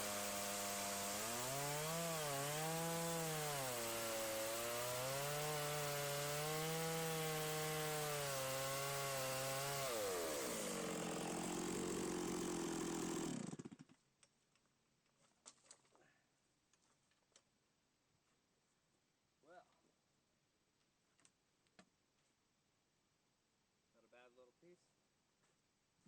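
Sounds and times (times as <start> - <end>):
chainsaw running hard: 0.0 - 13.8.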